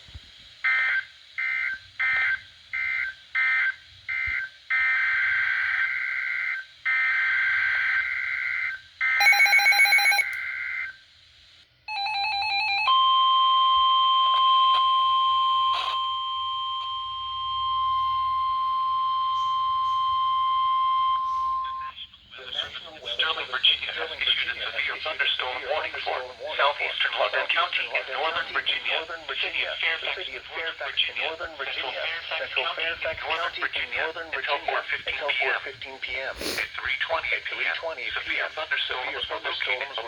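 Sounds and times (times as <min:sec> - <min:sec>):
steady warning alarm tone: 0:00.7 - 0:10.9, 0:11.9 - 0:22.0
brief beeping: 0:09.2 - 0:10.4
rasping digital alert bursts: 0:09.2 - 0:10.4.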